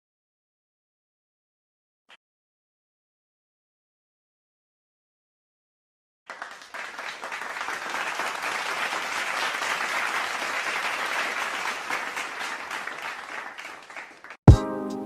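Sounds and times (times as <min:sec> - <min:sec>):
crowd applauding: 0:06.3 - 0:14.4.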